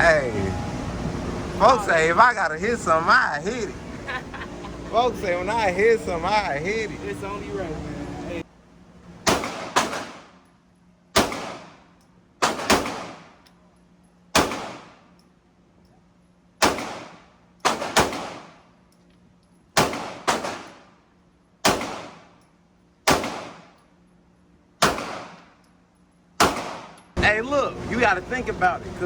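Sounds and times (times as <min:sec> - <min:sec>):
gunshots with echo: 0:09.3 - 0:10.3, 0:11.2 - 0:11.8, 0:12.4 - 0:13.3, 0:16.6 - 0:18.6, 0:23.1 - 0:23.7, 0:24.8 - 0:25.4, 0:26.4 - 0:27.0.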